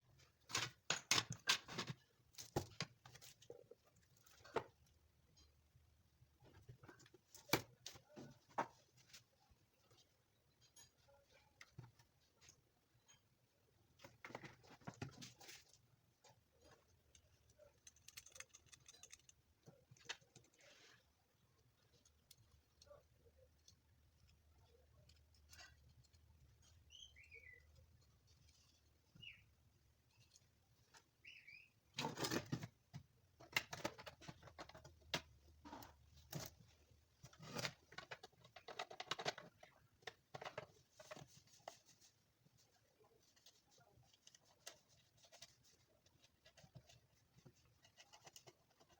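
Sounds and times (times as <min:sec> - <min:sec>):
objects being handled: 0:00.1 - 0:48.9
faint bird chirps: 0:26.6 - 0:27.9, 0:29.1 - 0:29.5, 0:31.2 - 0:31.9.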